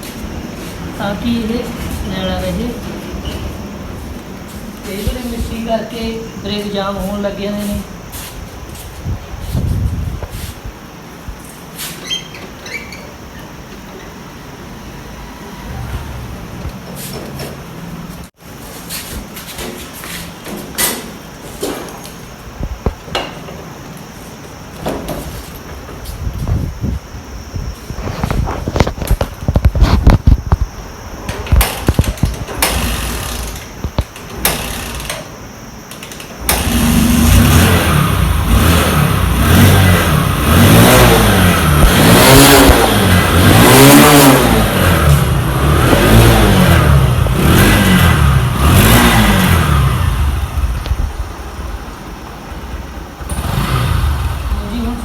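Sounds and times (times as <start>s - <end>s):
motorcycle engine revving: 14.8s - 17.0s, 31.4s - 35.2s, 36.4s - 51.9s, 52.6s - 55.0s
clicks and knocks of bike work: 19.5s - 22.2s, 22.8s - 23.7s, 31.2s - 37.4s.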